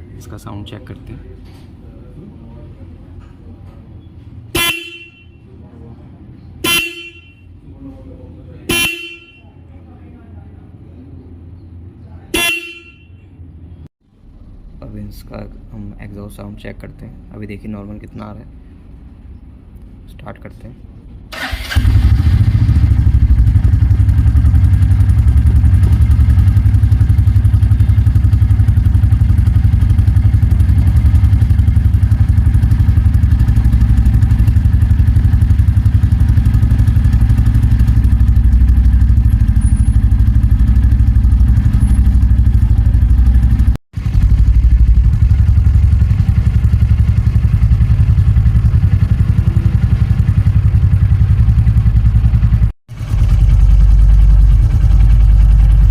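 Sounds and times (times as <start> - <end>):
motorcycle engine idling: 21.4 - 55.9.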